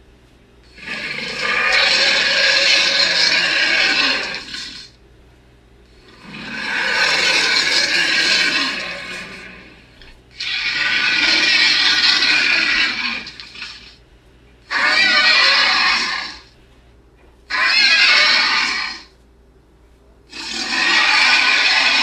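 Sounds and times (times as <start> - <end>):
harsh hissing roars: 0.7 - 4.9, 5.9 - 14.0, 14.6 - 16.6, 17.5 - 19.1, 20.3 - 22.0.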